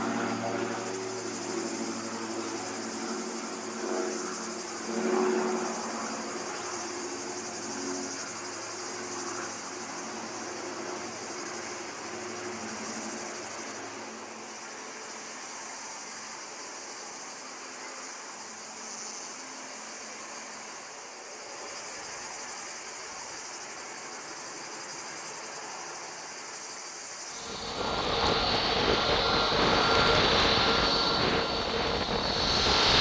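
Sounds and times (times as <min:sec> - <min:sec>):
cicadas buzzing: 0:00.0 - 0:33.0
low engine drone: 0:27.4 - 0:33.0.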